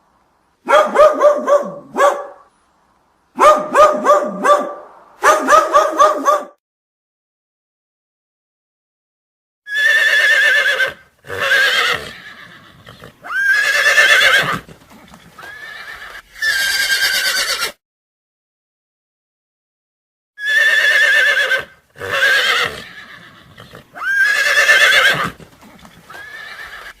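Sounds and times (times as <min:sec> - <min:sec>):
horse whinnying: 0:09.7 - 0:17.8, 0:20.4 - 0:27.0.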